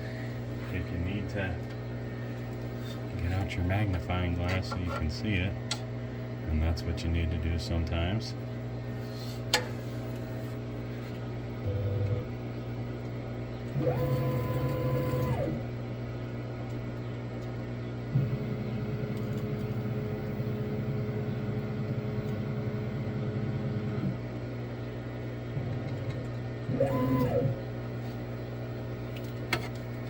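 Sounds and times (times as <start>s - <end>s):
steady low hum: 0.0s - 30.0s
stepper motors whining: 13.7s - 15.6s, 26.7s - 27.6s.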